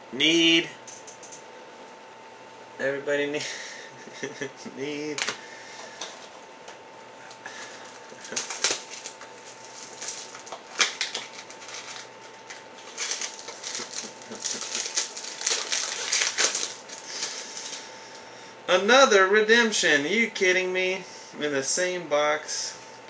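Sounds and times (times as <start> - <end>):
cards being handled: 7.6 - 17.8
wrapper crinkling and tearing: 7.7 - 17.8.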